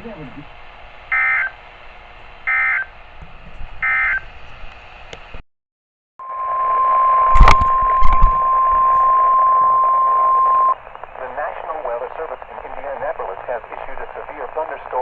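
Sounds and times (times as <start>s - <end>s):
steady alarm tone: 1.1s - 1.6s, 2.4s - 2.9s, 3.8s - 4.3s, 6.2s - 10.8s
warbling data bursts: 6.2s - 11.4s.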